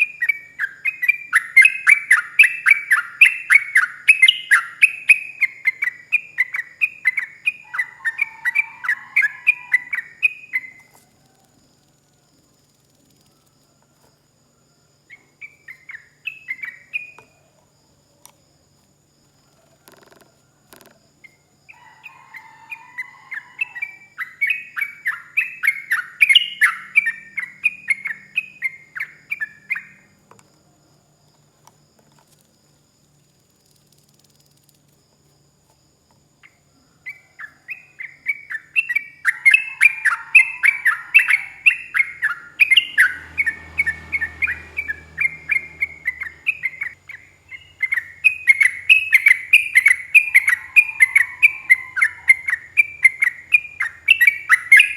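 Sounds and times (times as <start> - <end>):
bird singing fast notes: 0.0 - 10.8, 24.0 - 30.0, 38.0 - 54.9.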